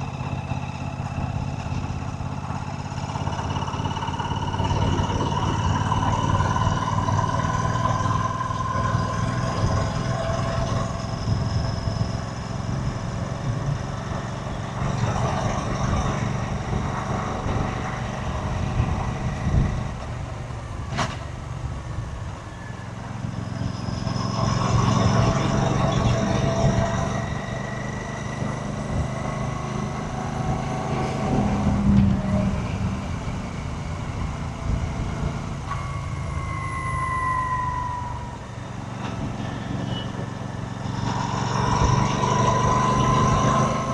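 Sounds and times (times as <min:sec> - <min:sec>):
motorcycle engine running: 0:00.0 - 0:20.4.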